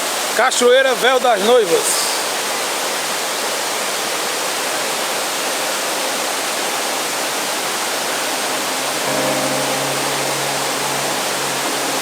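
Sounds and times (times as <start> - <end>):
waterfall roaring: 0.0 - 12.0
steady musical tones: 8.8 - 12.0.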